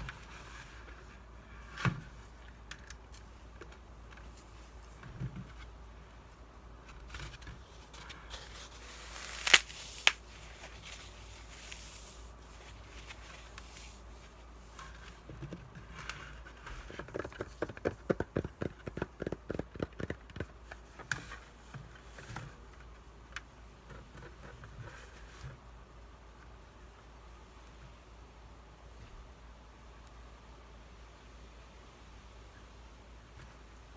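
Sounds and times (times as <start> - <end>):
floral foam crackling: 7.6 - 15.3.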